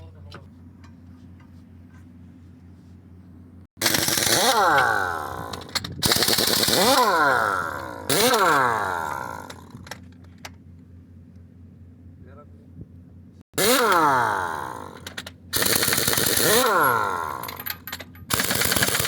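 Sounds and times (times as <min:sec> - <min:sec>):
pneumatic impact wrench rattling: 0:03.8 - 0:10.8, 0:13.6 - 0:19.0.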